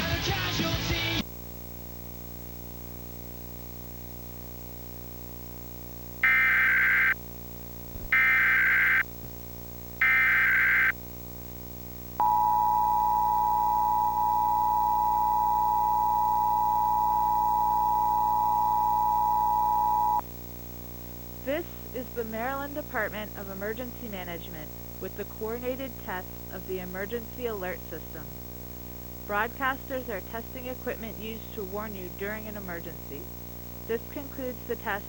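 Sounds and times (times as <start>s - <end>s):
screeching data bursts: 6.2s - 7.2s, 8.0s - 9.0s, 10.0s - 11.0s
two-tone attention signal: 6.2s - 7.2s, 8.1s - 9.0s, 12.2s - 20.2s
low hum: 6.2s - 20.2s.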